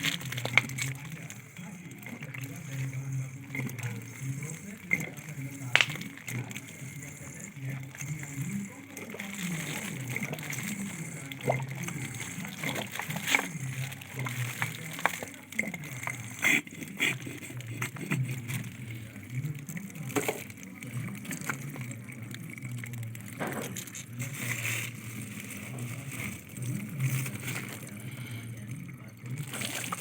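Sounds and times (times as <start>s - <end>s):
indistinct voices: 0.0s - 30.0s
liquid sloshing and gurgling: 0.0s - 30.0s.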